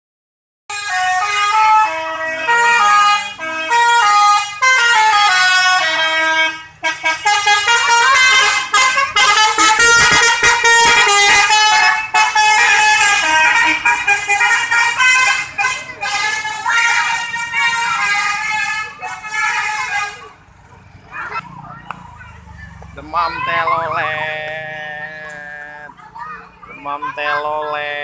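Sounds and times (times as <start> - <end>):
multi-tone musical bus horn: 0.7 - 20.5, 23.6 - 26.0.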